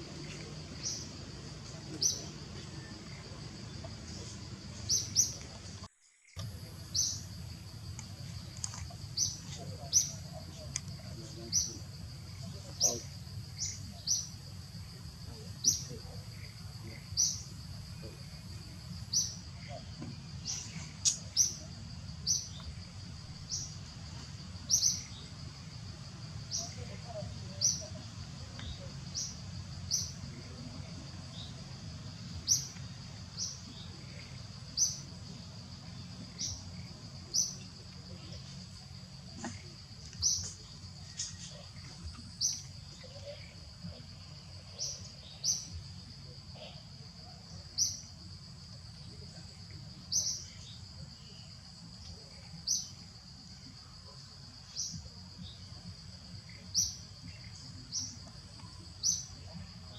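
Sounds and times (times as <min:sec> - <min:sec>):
high insect drone: 0:00.0 - 0:59.9.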